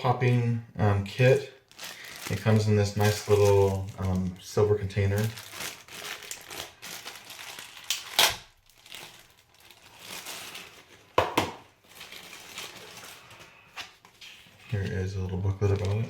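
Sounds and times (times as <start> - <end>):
packaging rustling and crinkling: 1.1 - 16.0.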